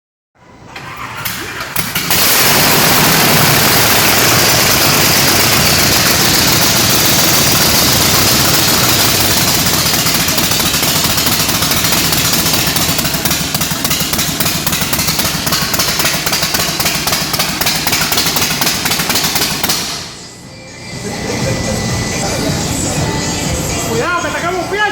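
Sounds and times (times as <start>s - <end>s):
car engine running loud: 0.9s - 20.2s.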